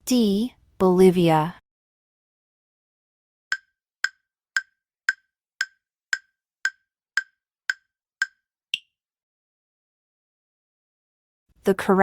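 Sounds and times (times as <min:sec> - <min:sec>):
clock-like timer ticking: 0:03.5 - 0:08.4.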